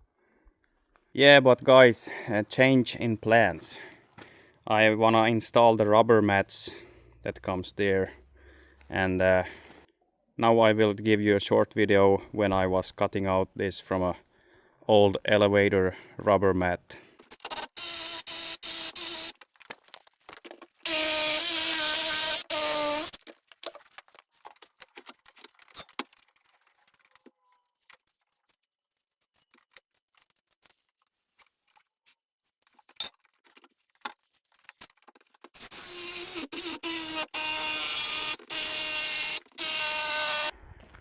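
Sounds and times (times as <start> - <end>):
power tool cutting rubber mat: 17.3 - 19.4, 20.8 - 23.2, 35.6 - 40.5.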